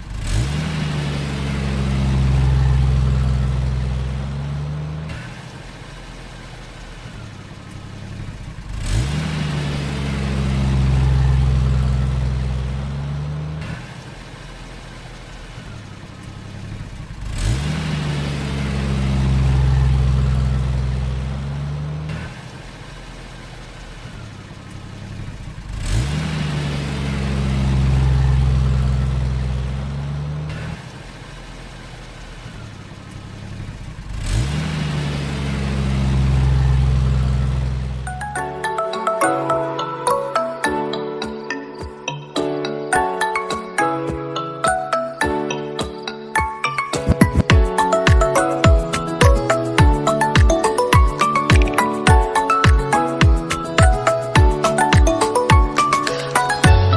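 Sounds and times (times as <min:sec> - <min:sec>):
heavy engine revving: 0:00.0 - 0:23.0, 0:23.6 - 0:38.8.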